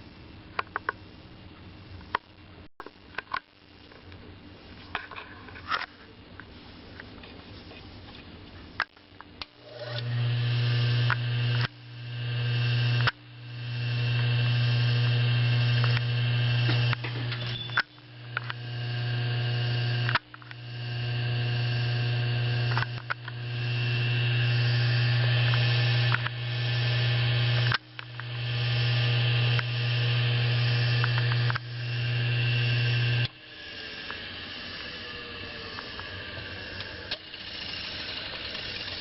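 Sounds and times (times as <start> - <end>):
electric motor humming: 9.6 - 39.0
faint rising whine: 9.6 - 39.0.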